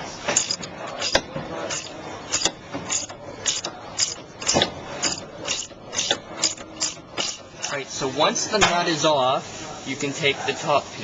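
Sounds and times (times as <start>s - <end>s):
ratcheting wrench clicking: 0.4s - 7.8s.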